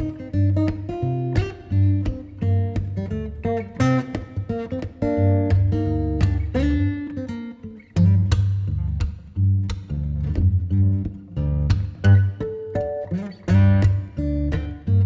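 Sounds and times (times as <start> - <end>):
acoustic guitar music: 0.0 - 15.0
bass line: 8.0 - 12.4.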